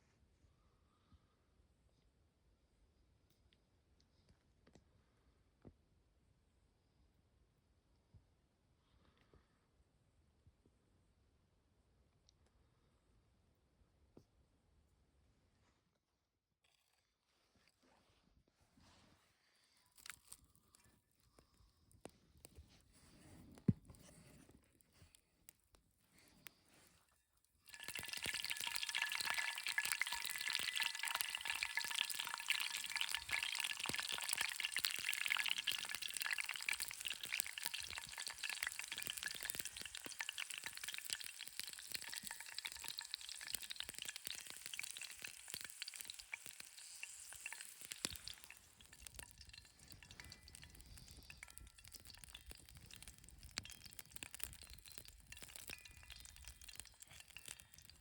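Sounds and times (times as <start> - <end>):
food sizzling in hot oil: 27.7 - 58.0.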